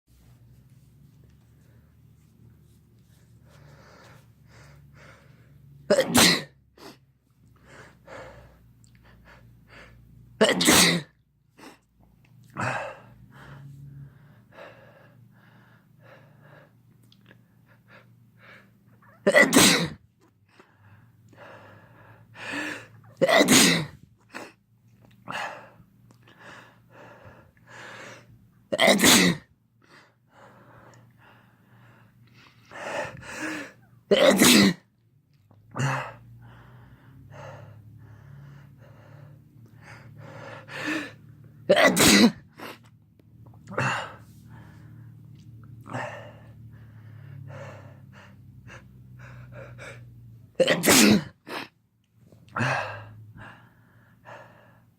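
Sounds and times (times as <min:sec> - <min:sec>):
man sneezing: 0:05.9 - 0:06.6, 0:10.4 - 0:11.1, 0:19.2 - 0:20.0, 0:23.2 - 0:24.5, 0:28.7 - 0:29.5, 0:34.1 - 0:34.9, 0:41.7 - 0:42.9, 0:50.6 - 0:51.7.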